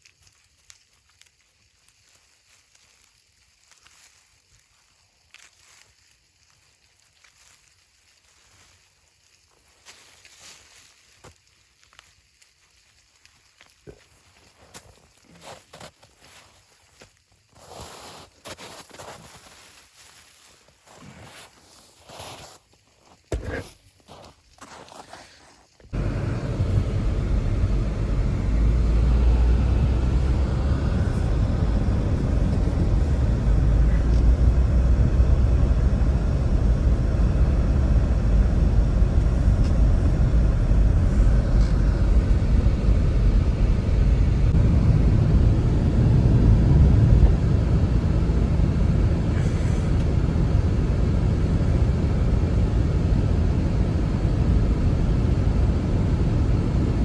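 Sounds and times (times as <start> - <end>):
strong blizzard wind: 25.9 - 57.0.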